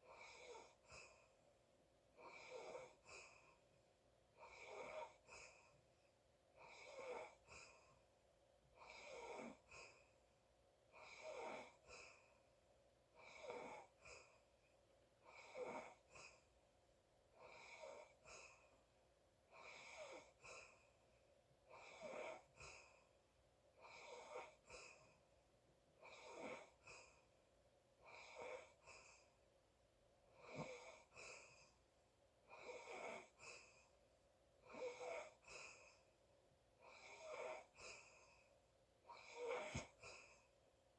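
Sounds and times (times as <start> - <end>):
wheezy sleeping breathing: 0.0 - 1.4, 2.2 - 3.6, 4.4 - 5.8, 6.6 - 8.0, 8.8 - 10.2, 10.9 - 12.5, 13.1 - 14.5, 15.2 - 16.5, 17.4 - 18.8, 19.5 - 21.0, 21.7 - 23.2, 23.8 - 25.3, 26.0 - 27.4, 28.0 - 29.4, 30.3 - 31.9, 32.5 - 34.0, 34.6 - 36.2, 36.8 - 40.6.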